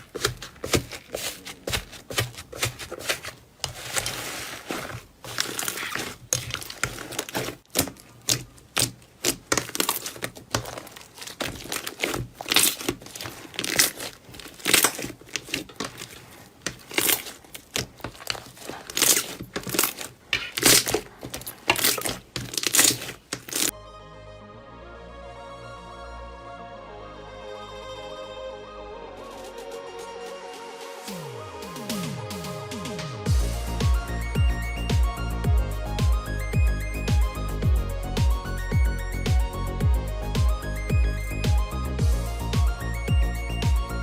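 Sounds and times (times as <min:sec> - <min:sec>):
slime crackling and squishing: 0:00.0 - 0:23.7
music: 0:23.7 - 0:44.0.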